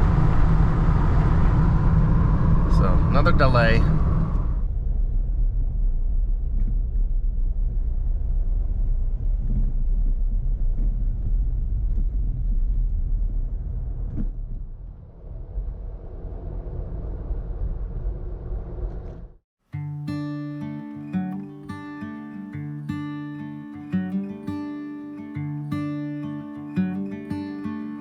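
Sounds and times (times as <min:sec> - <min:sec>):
car road and engine rumble: 0:00.0 - 0:19.4.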